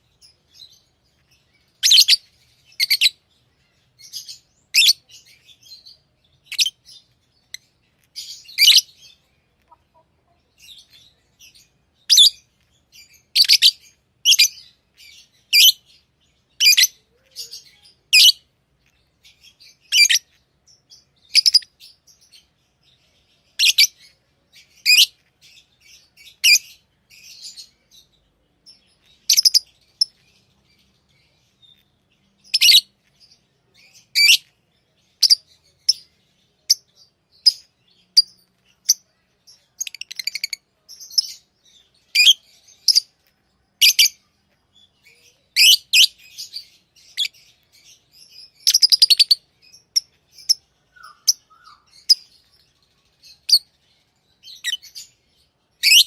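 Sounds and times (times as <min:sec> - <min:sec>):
lovebirds chirping: 0:00.0 - 0:56.0.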